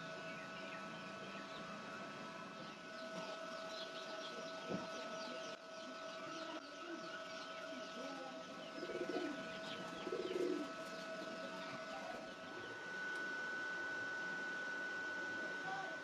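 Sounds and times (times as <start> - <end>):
small birds chirping: 0.0 - 12.8
dove cooing: 8.4 - 12.2.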